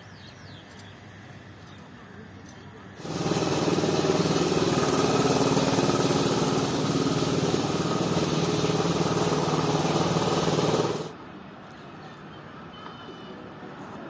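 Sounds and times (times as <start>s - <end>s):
small engine idling: 3.0s - 11.1s.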